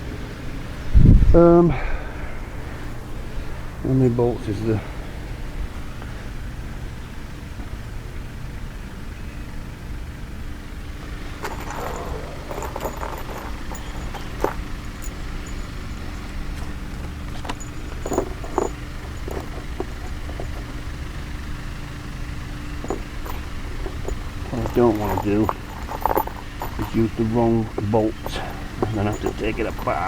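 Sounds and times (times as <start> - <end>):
metal bolts clinking: 11.1 - 30.0.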